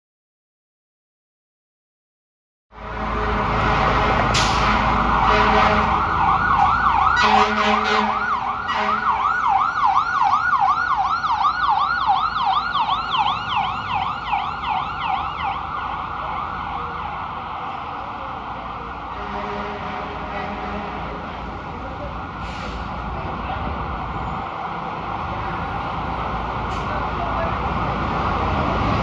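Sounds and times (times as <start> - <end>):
ambulance air horn blasts: 2.7 - 6.2, 7.1 - 9.3, 19.1 - 21.1.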